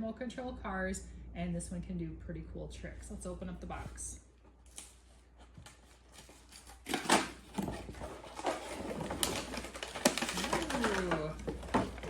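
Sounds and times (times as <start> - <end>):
packaging rustling: 4.7 - 12.0
cardboard box being opened: 6.0 - 12.0.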